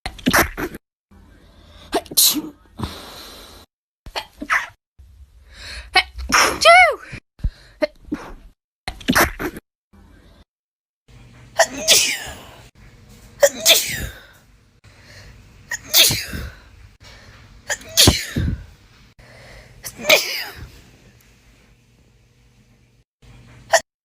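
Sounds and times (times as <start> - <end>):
person sneezing: 1.9 - 3.0, 6.3 - 7.1, 11.6 - 12.6, 13.4 - 14.3, 15.7 - 16.6, 17.7 - 18.6, 19.8 - 20.7.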